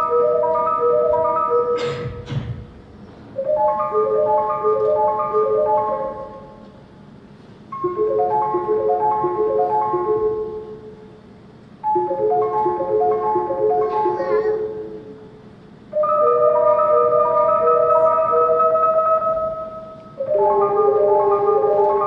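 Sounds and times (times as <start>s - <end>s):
marimba-like broken-chord music: 0.0s - 2.3s, 3.4s - 6.6s, 11.9s - 15.0s.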